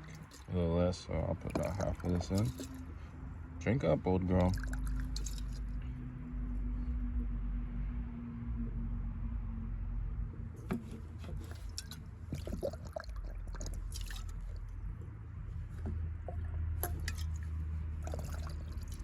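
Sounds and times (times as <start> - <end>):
liquid glugging into fuel filler: 0.0 - 0.6, 1.2 - 3.1, 4.2 - 5.8, 10.6 - 19.0
gurgles and drips: 0.0 - 3.3, 4.1 - 6.0, 10.7 - 19.0.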